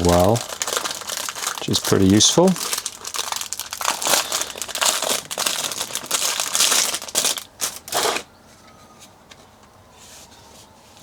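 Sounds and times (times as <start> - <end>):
packaging crinkling: 0.0 - 8.3.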